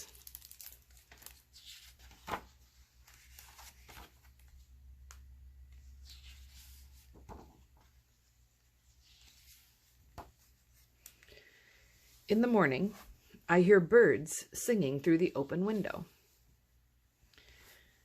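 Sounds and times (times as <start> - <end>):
paper pages rustling: 0.0 - 4.7, 5.8 - 8.0.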